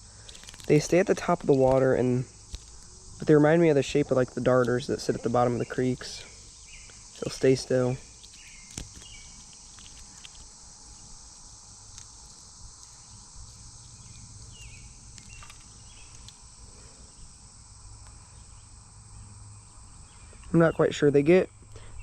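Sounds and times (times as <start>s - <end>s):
insects and crickets chorus: 0.0s - 22.0s
faint chirps and clicks: 6.6s - 7.4s, 8.1s - 16.5s, 19.6s - 20.6s.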